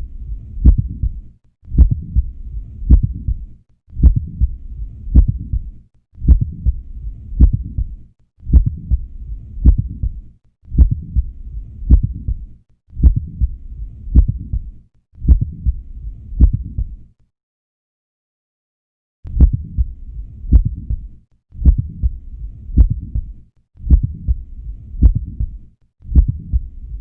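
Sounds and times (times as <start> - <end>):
heartbeats through stethoscope: 0.0 - 17.0, 19.3 - 27.0
low rumble: 0.0 - 17.0, 19.3 - 27.0
heart valve click: 0.6 - 2.3, 2.9 - 3.4, 4.0 - 5.7, 8.5 - 9.0, 9.6 - 11.3, 11.9 - 12.4, 13.0 - 14.7, 15.3 - 15.8, 16.4 - 16.9, 20.5 - 22.2, 22.8 - 24.4, 25.0 - 26.7.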